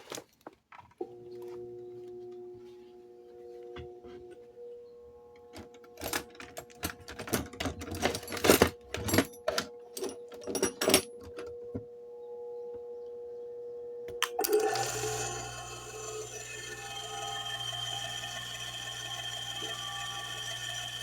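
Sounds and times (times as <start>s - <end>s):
steady motor hum: 14.3s - 21.0s.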